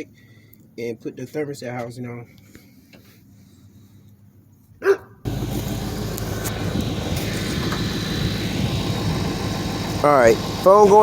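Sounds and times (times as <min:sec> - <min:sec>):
car engine idling: 0:05.3 - 0:11.0.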